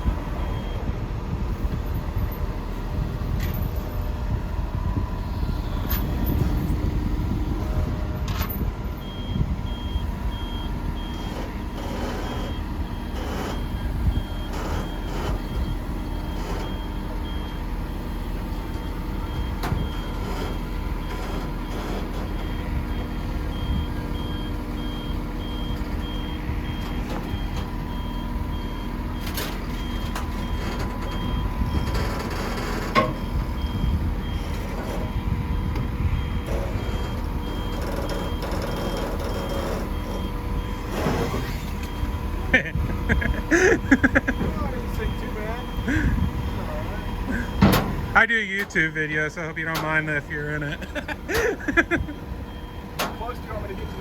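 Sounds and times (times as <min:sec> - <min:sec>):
backup alarm beeping: 0:00.0 - 0:00.9, 0:08.9 - 0:54.0
diesel engine idling: 0:00.0 - 0:54.0
knocks and clanks: 0:29.2 - 0:33.3, 0:47.4 - 0:48.8.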